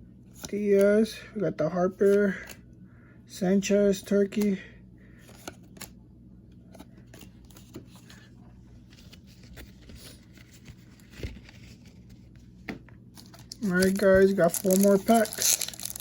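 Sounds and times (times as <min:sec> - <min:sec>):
trading cards shuffled by hand: 0:07.0 - 0:16.0.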